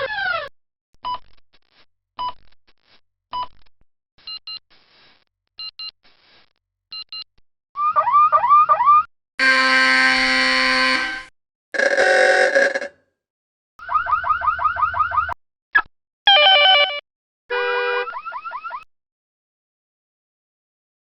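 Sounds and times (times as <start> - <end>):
loud buzzer tone: 9.4 - 12.9.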